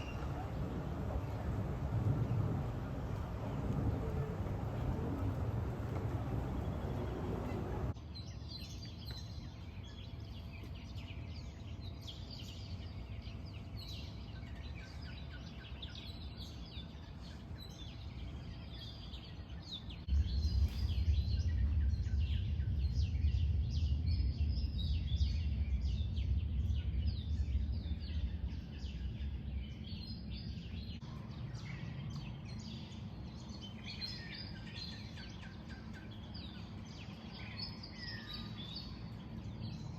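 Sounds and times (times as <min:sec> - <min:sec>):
low background rumble: 0:00.0 - 0:08.0, 0:10.3 - 0:39.9
birds chirping and singing: 0:00.0 - 0:20.7, 0:25.2 - 0:39.9.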